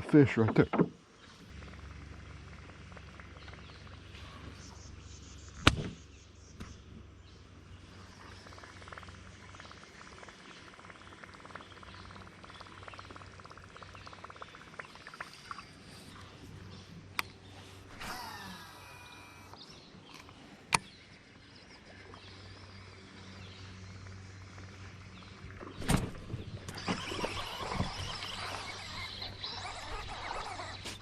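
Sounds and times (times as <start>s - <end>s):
low hum: 1.0s - 31.0s
sharp snap: 5.6s - 6.0s
fishing reel whirring: 17.9s - 19.6s, 26.7s - 31.0s.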